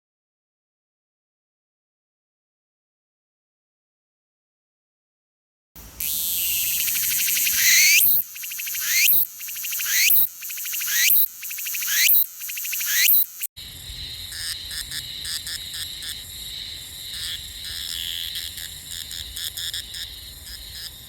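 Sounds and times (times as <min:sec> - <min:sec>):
cicada singing: 0:05.8 - 0:21.0
pulsing insect call: 0:05.8 - 0:21.0.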